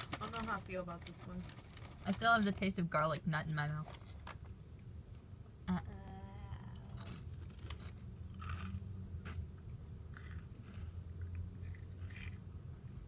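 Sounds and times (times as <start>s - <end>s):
low steady hum: 0.0s - 13.0s
person crunching crackers: 6.9s - 8.8s, 10.1s - 10.6s, 11.2s - 12.5s.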